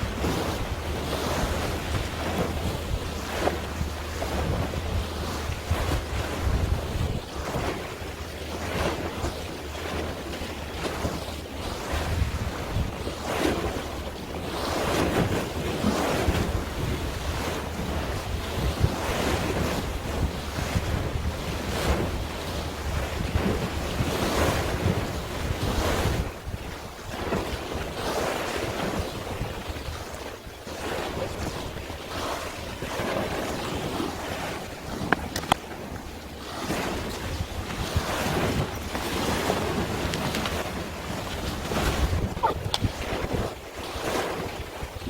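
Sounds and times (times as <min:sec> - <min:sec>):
sea waves washing: 0:00.0 - 0:45.0
wind buffeting microphone: 0:00.0 - 0:45.0.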